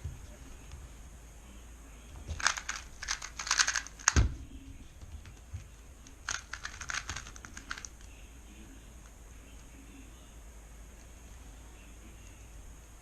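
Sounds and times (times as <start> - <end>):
plastic cube clicking: 2.4 - 4.2, 6.2 - 8.1.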